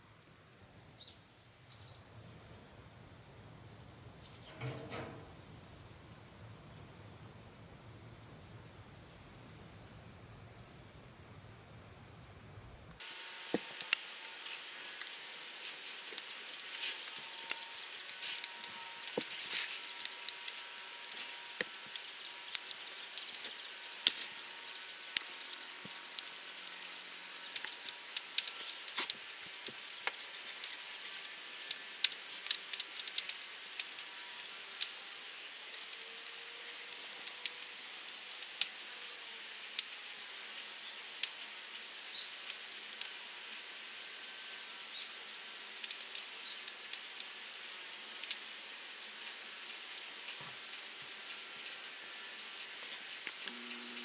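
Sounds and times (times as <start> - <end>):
fire hiss: 13.0 - 53.6
wood fire crackling and popping: 13.0 - 54.0.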